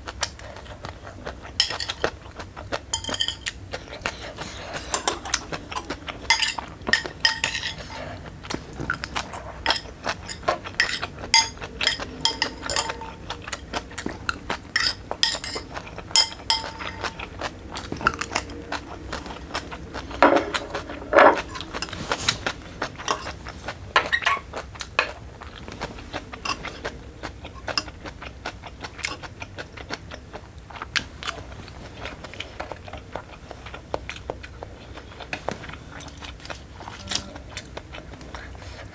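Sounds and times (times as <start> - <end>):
utensils clinking against a bowl: 1.4 - 28.1, 35.4 - 37.2.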